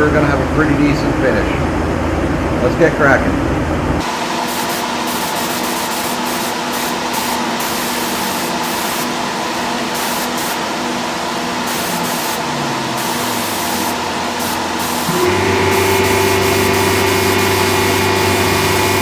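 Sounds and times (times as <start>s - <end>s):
steady hum: 0.0s - 19.0s
paint spray gun hissing: 4.0s - 19.0s.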